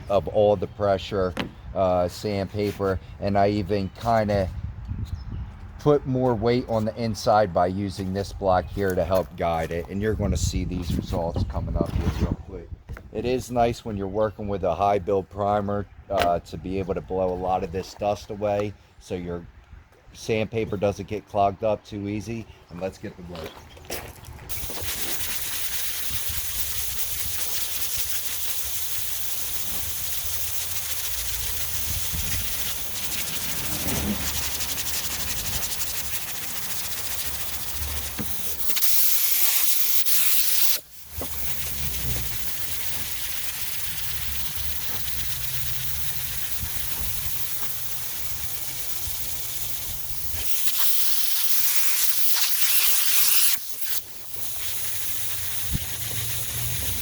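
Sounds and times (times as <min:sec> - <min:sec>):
compressed air blowing: 0:24.4 - 0:57.0
hand sanding scratchy hiss: 0:24.5 - 0:57.0.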